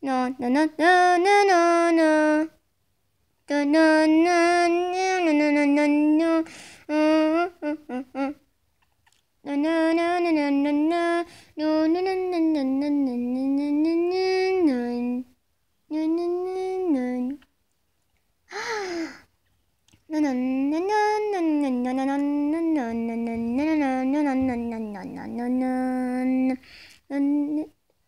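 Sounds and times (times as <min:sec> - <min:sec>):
high voice humming: 0:03.5 - 0:08.4, 0:09.4 - 0:15.3, 0:15.9 - 0:17.5, 0:20.1 - 0:27.8.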